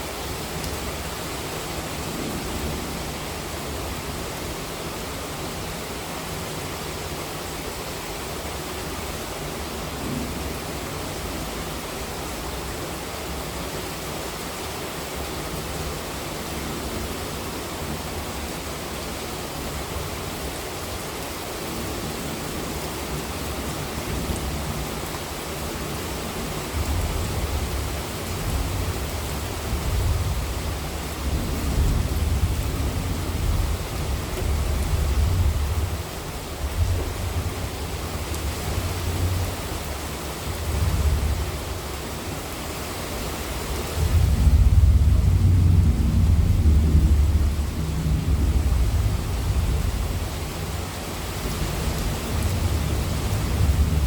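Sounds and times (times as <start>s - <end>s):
heavy rain hissing: 0.0s - 54.0s
low thunder rumble: 44.0s - 50.8s.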